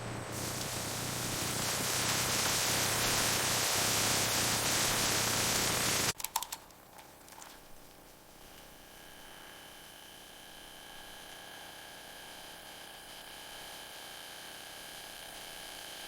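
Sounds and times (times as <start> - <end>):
steady hissing: 0.0 - 8.9
light clicks: 6.2 - 8.0.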